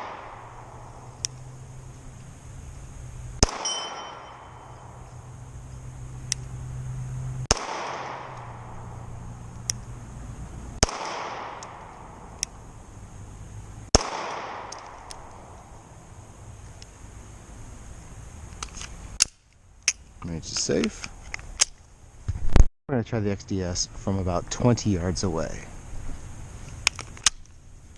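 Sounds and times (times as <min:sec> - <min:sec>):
pistol shots with echo: 0:03.4 - 0:04.6, 0:07.5 - 0:08.5, 0:10.8 - 0:11.9, 0:14.0 - 0:15.2
high metallic ringing: 0:03.5 - 0:05.3.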